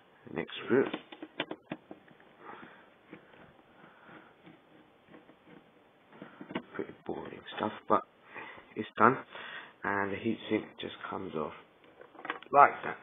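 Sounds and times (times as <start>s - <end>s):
screwdriver scratching on screw: 3.1s - 5.8s.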